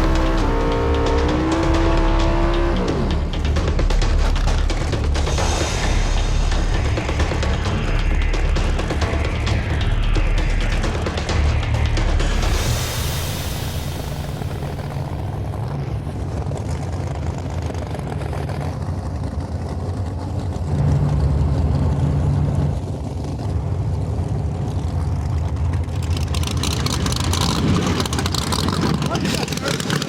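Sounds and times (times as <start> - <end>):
race car engines idling: 0.0 - 12.8, 13.5 - 30.0
rough rapid crackling: 25.5 - 30.0.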